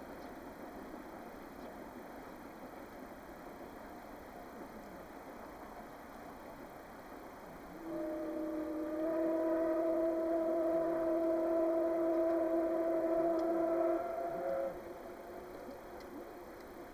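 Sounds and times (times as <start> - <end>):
steam locomotive whistle blast: 7.8 - 15.8.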